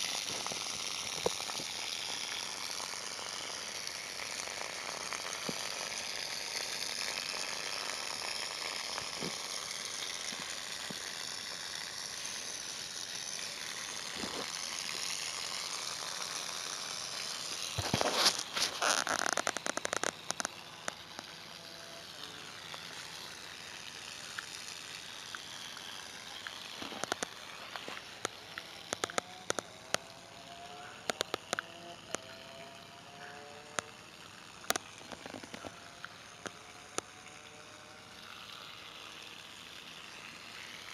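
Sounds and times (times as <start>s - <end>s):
steady hiss: 0.0s - 40.9s
sharp clicks: 17.4s - 21.3s, 24.2s - 30.1s, 31.0s - 32.4s, 34.6s - 37.1s.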